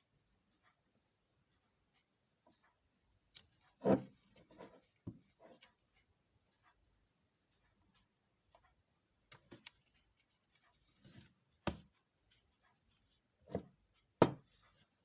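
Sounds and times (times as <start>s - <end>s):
clicks and knocks of small tools: 9.3s - 12.8s.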